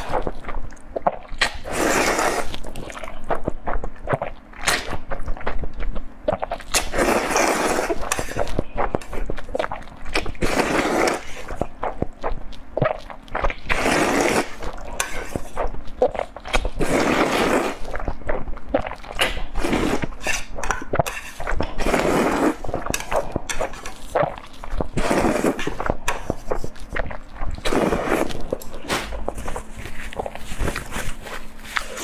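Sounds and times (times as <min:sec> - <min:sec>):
wet chewing clicks: 0:00.0 - 0:21.8, 0:22.6 - 0:30.9
loud slurping: 0:01.0 - 0:03.0, 0:06.8 - 0:08.5, 0:10.4 - 0:11.6, 0:13.6 - 0:18.0, 0:21.2 - 0:23.2, 0:24.1 - 0:30.9.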